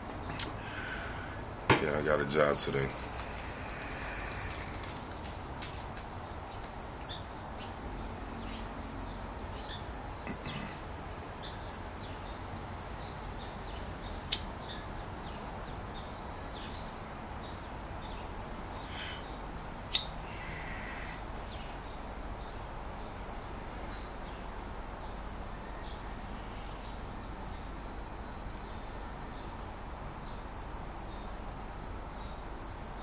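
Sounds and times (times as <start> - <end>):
low background hiss: 0.0 - 33.0
sharp clicks: 0.3 - 0.6, 19.9 - 20.1.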